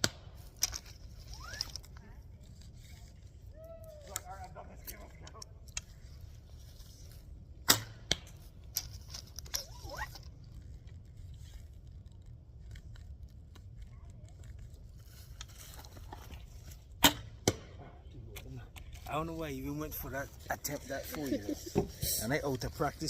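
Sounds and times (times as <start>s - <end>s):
arrow hitting target: 7.6s - 8.4s, 17.0s - 17.9s.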